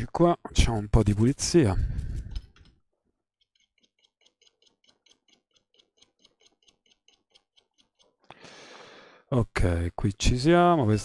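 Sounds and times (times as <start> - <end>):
brush scrubbing circuit board: 0.0 - 2.7, 10.7 - 11.0.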